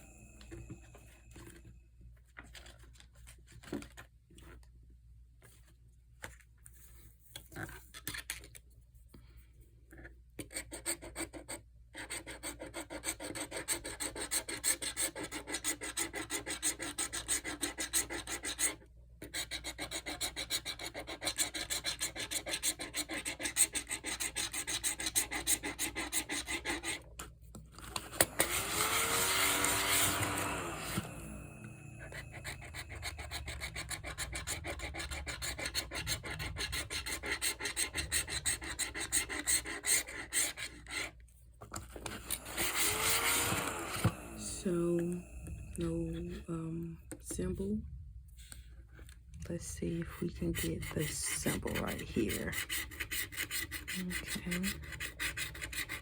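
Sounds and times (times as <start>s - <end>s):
steady rubbing on ticket: 10.5s - 27.1s, 31.7s - 41.2s, 49.6s - 56.0s
lottery ticket being scratched: 32.0s - 41.1s, 49.6s - 56.0s.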